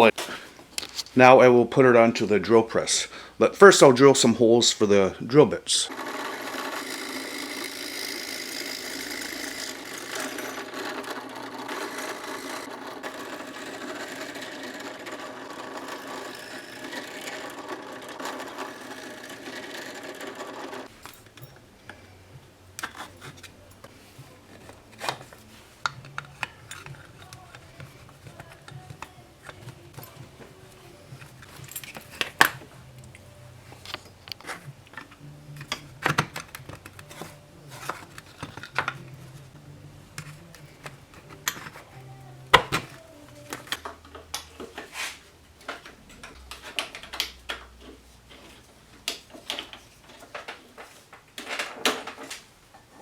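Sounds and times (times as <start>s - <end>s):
drill press boring into wood: 5.9s - 20.9s
handling clicks and knocks: 22.8s - 44.9s.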